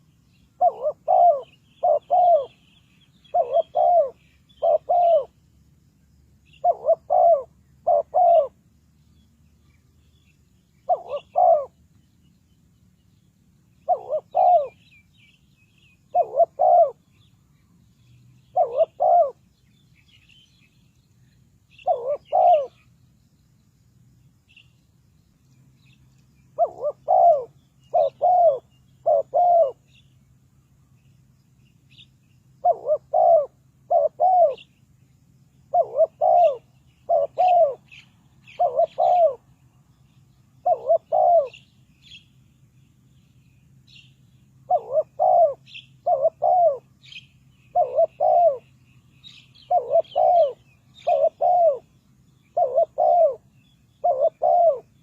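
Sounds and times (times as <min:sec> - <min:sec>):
faint small bird chirps: 0:00.0 - 0:55.0
dove cooing: 0:00.6 - 0:05.4, 0:06.5 - 0:08.6, 0:10.8 - 0:11.8, 0:13.8 - 0:15.0, 0:16.0 - 0:17.1, 0:18.4 - 0:19.5, 0:21.7 - 0:22.8, 0:26.6 - 0:29.9, 0:32.6 - 0:34.7, 0:35.7 - 0:39.5, 0:40.6 - 0:41.6, 0:44.6 - 0:55.0.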